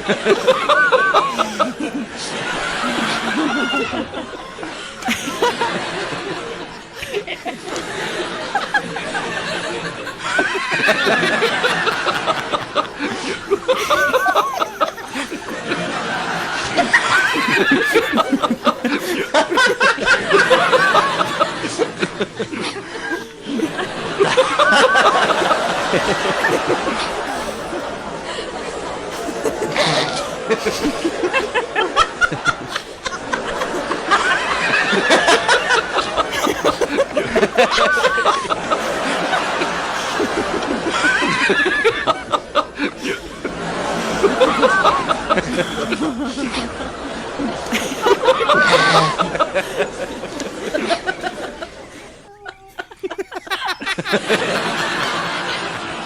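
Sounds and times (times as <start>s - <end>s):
people clapping: 0.0s - 51.8s
crowd laughing: 0.0s - 56.0s.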